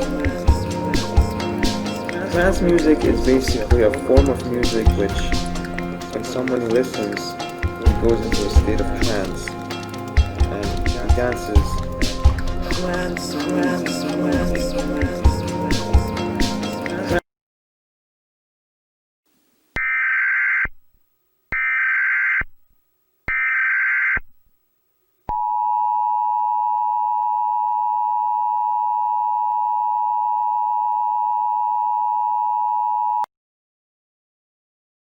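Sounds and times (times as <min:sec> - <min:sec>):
buzzy data bursts: 0:00.0 - 0:17.2.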